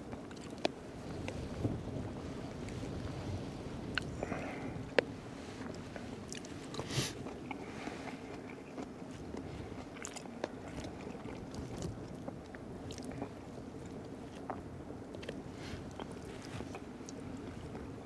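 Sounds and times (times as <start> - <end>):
wind and heavy rain: 0.6 - 8.0
person chewing: 3.8 - 18.0.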